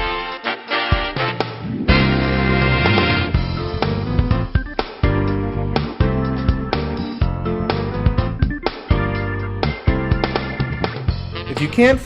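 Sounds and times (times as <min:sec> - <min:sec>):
sharp regular beats: 0:01.2 - 0:06.4.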